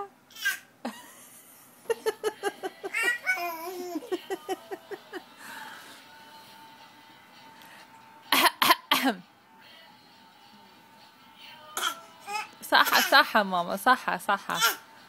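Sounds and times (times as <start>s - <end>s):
person laughing: 0.9s - 5.4s.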